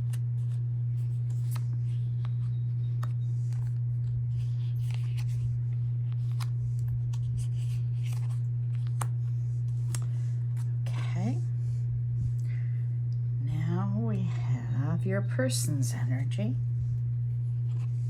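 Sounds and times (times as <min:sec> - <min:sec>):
cards clicking and sliding: 0:00.0 - 0:10.8
steady low hum: 0:00.0 - 0:18.0.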